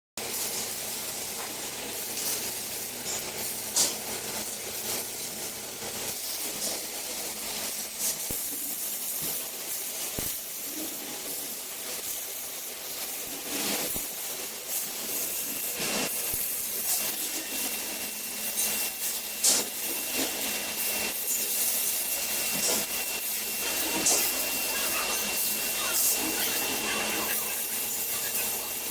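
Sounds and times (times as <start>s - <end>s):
welding arc crackling hiss: 0.2s - 28.9s
thin steady high tone: 19.8s - 28.9s.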